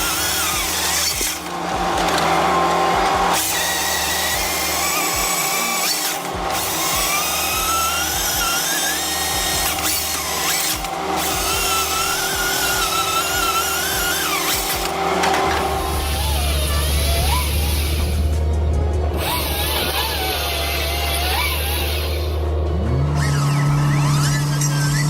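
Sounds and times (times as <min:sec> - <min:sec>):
power saw whining: 0:00.0 - 0:25.0.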